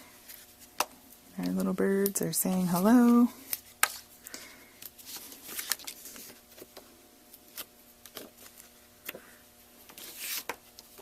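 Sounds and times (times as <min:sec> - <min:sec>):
soft paper rustle: 0:04.9 - 0:06.8.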